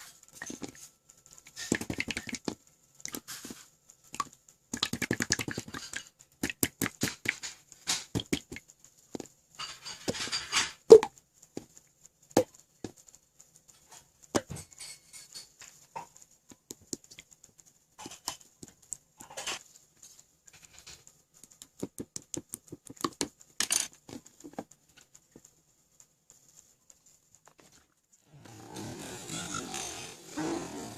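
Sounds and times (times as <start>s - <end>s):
slime squelching and popping: 1.4s - 9.3s, 10.9s - 11.7s, 21.4s - 23.4s.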